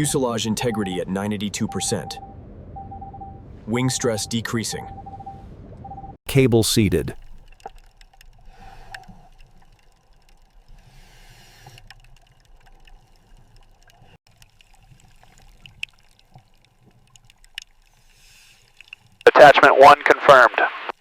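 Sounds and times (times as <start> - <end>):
water trickling: 7.2 - 19.3
small clicks and taps: 11.6 - 18.0, 18.7 - 19.2.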